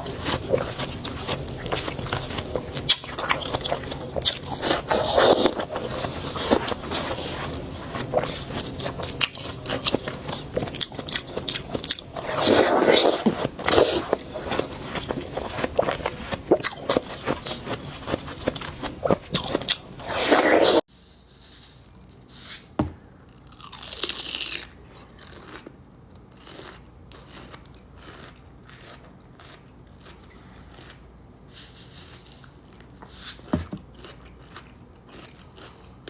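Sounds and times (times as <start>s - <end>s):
watermelon being bitten and chewed: 0.0s - 20.9s, 23.3s - 36.0s.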